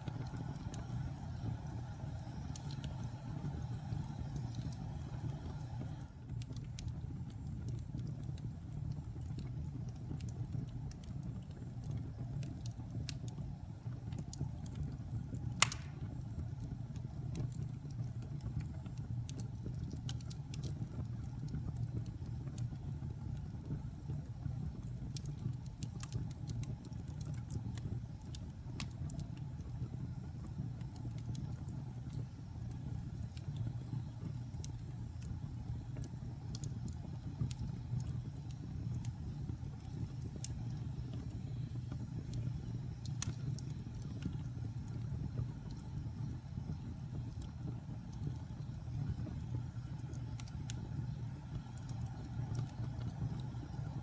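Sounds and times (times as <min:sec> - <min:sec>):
fire popping: 0:00.0 - 0:54.0
wood fire crackling: 0:00.0 - 0:54.0
loud sharp snap: 0:15.6 - 0:16.0.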